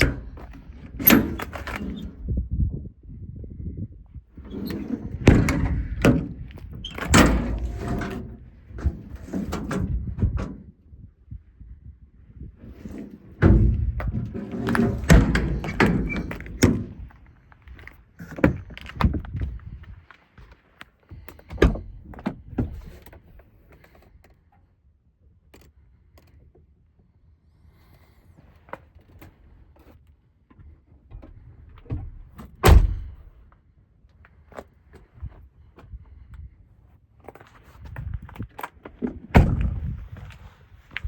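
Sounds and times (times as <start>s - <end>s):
latch clicks: 0.0s - 2.1s, 4.4s - 10.6s, 12.7s - 17.1s
truck doors thunking: 0.0s - 2.1s, 4.4s - 10.7s, 12.6s - 17.1s, 32.6s - 33.3s, 39.3s - 39.9s.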